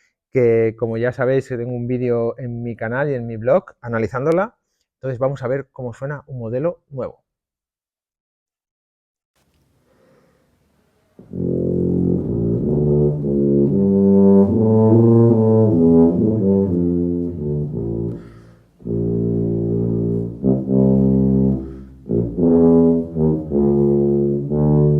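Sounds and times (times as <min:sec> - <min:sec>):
tuba playing low notes: 0:11.2 - 0:24.9.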